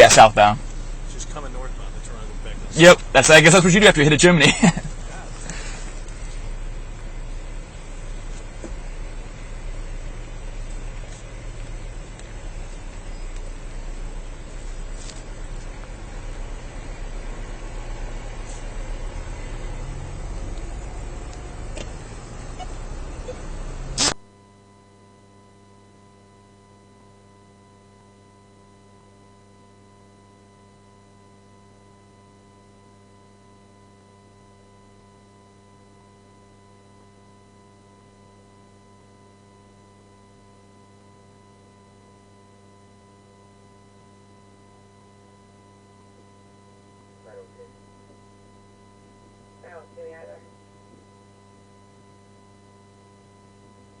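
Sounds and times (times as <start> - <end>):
electrical hum: 0.0 - 54.0.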